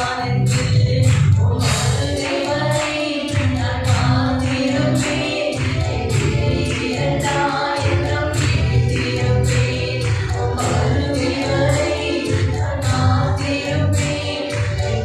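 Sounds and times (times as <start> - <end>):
group of voices singing: 0.0 - 15.0
instrumental backing with beat: 0.0 - 15.0.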